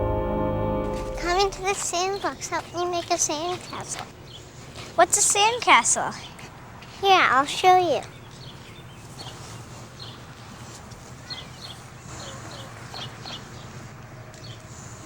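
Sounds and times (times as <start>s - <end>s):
steady low hum: 0.0s - 3.2s
small birds chirping: 1.8s - 14.8s.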